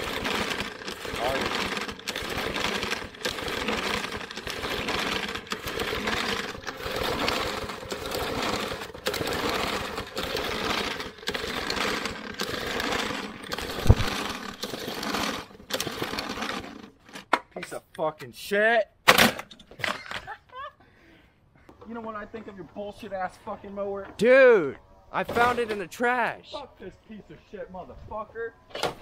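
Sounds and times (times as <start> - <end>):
lawn mower engine pull-starting: 0.0 - 17.4, 25.2 - 26.3, 28.6 - 29.0.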